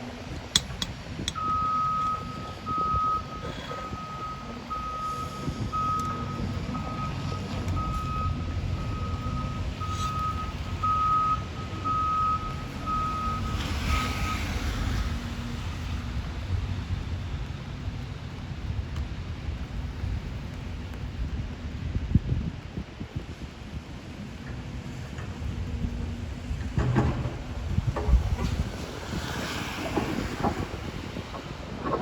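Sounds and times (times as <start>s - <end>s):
diesel engine rumble: 0.0s - 32.0s
reversing alarm beeping: 1.3s - 14.5s.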